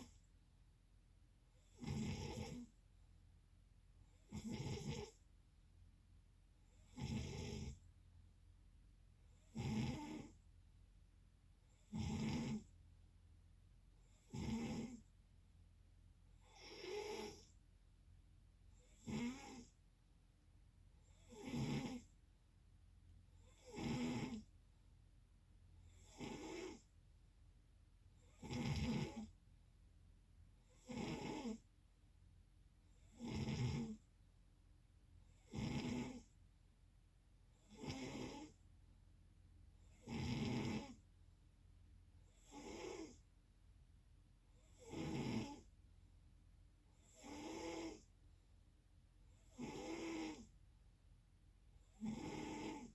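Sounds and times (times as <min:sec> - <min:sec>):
person snoring: 0:11.9 - 0:12.6, 0:28.4 - 0:29.3, 0:30.8 - 0:31.6, 0:42.4 - 0:43.2, 0:52.0 - 0:52.9.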